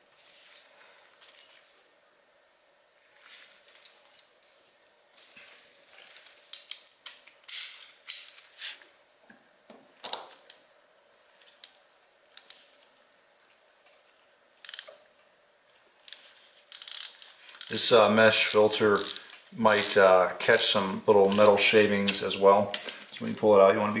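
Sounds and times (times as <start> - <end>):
socket ratchet clicking: 14.6 - 14.9, 16.1 - 17.7, 18.4 - 19.9.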